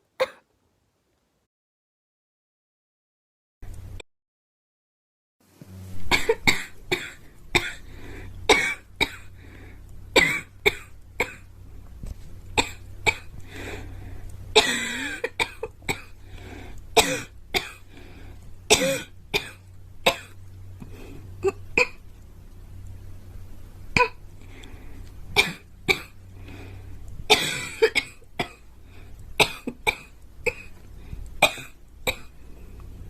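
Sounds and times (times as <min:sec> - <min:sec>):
girl coughing: 0:00.2 - 0:00.5, 0:06.1 - 0:07.8, 0:14.6 - 0:16.1, 0:18.7 - 0:20.3, 0:27.3 - 0:28.6
steady low hum: 0:05.5 - 0:33.0.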